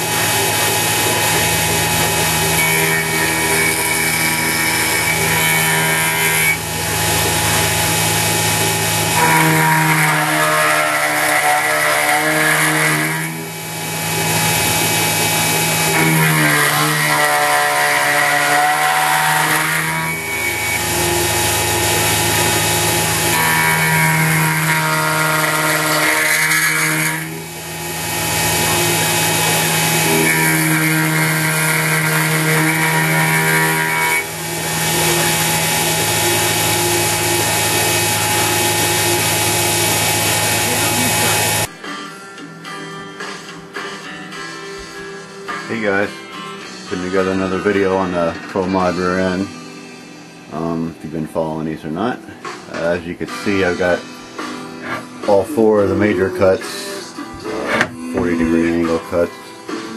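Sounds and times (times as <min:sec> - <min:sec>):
metal cutting chatter: 0:00.0 - 0:41.7, 0:52.7 - 0:59.9
milling spindle humming: 0:00.0 - 0:41.7
drive motors whining: 0:19.6 - 0:23.6, 0:33.5 - 0:41.7.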